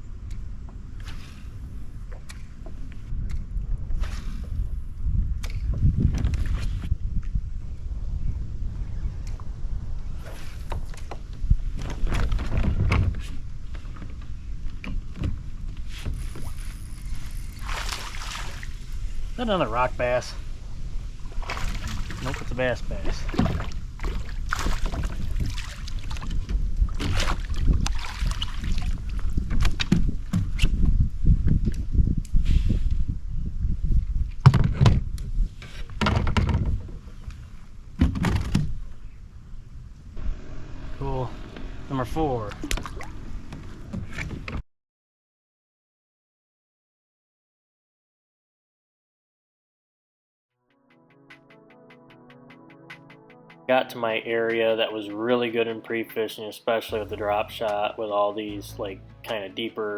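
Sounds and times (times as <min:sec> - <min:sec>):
wind rumble on microphone: 0:00.0 - 0:44.6
low rumbling: 0:38.7 - 0:44.6, 0:56.9 - 0:59.9.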